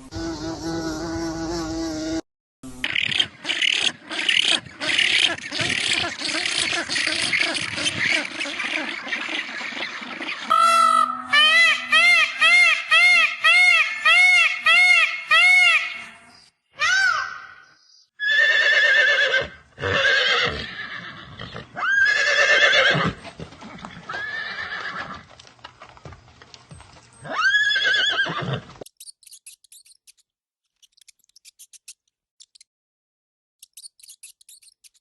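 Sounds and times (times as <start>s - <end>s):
horse neighing: 18.2s - 25.3s, 27.2s - 28.7s.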